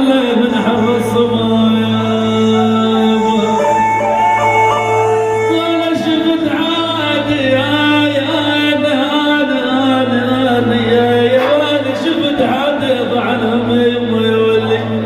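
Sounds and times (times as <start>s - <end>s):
person singing ornamented melody: 0.0s - 8.9s
low drone: 0.5s - 12.1s.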